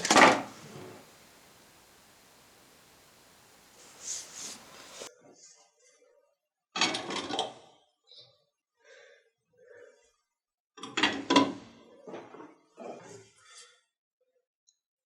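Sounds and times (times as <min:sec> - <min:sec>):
clattering bursts: 0:00.0 - 0:05.1.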